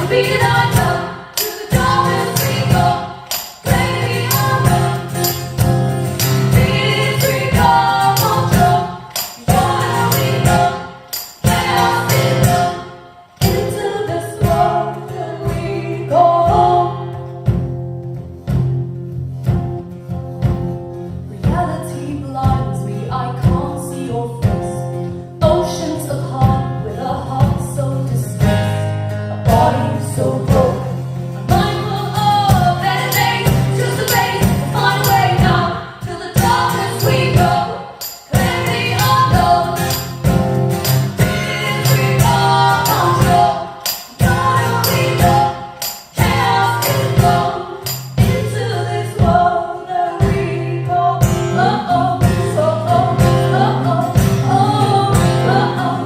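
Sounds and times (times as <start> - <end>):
rhythmic accompaniment: 0.0 - 15.6, 29.4 - 49.6.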